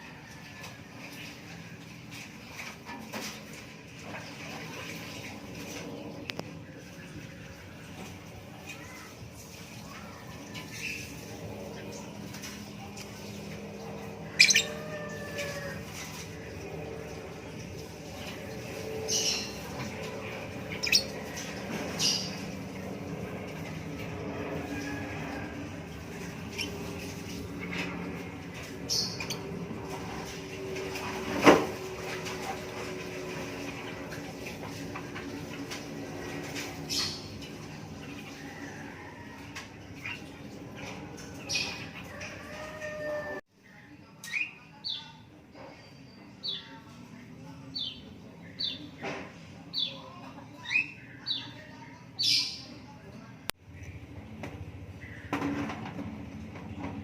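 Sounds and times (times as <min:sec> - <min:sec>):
birds chirping: 0:09.8 - 0:24.2, 0:25.2 - 0:31.2.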